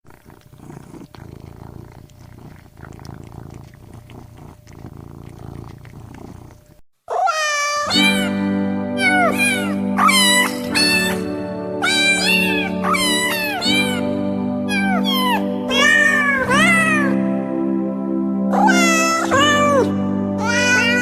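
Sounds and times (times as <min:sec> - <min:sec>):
cat meowing: 0:07.1 - 0:08.4, 0:09.0 - 0:11.2, 0:11.8 - 0:14.0, 0:14.7 - 0:17.2, 0:18.6 - 0:21.0
background music sustained notes: 0:08.0 - 0:21.0.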